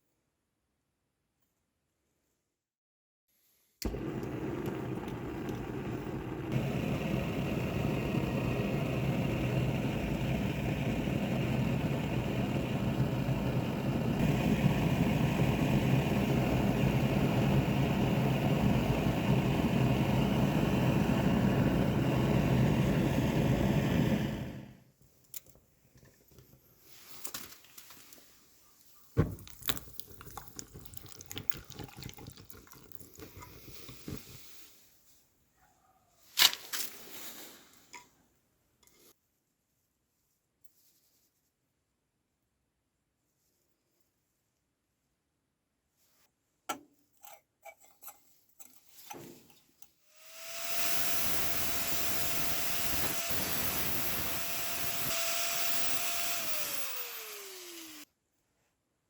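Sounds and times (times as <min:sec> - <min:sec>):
machine humming: 0:03.8 - 0:24.7, 0:50.2 - 0:58.0.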